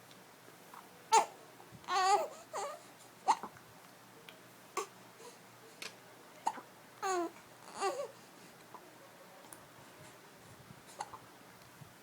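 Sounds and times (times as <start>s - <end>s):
baby whining cries: 1.1s - 3.5s, 7.0s - 8.2s
baby hiccuping: 1.1s - 3.6s, 11.0s - 11.2s.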